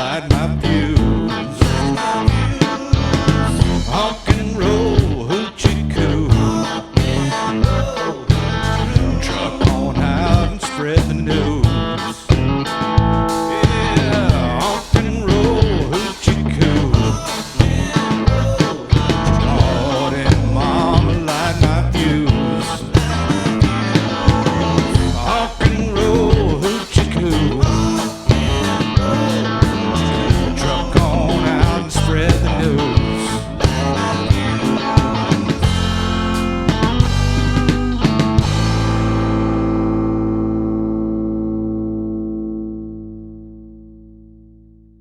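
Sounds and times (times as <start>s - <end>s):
drums: 0.0s - 41.8s
honky-tonk rock band playing: 0.0s - 42.9s
guitar bending wavering notes: 11.3s - 45.0s.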